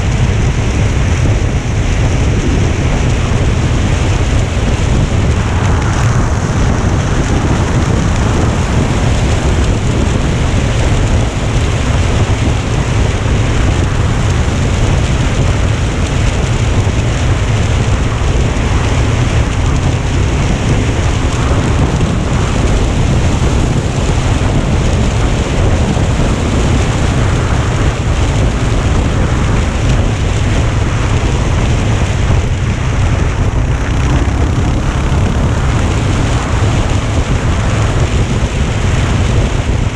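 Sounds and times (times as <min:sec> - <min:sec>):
wind buffeting microphone: 0:00.0 - 0:39.9.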